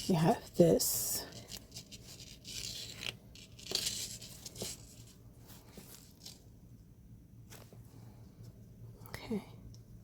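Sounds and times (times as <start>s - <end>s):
necklace rustling: 0.0s - 6.6s.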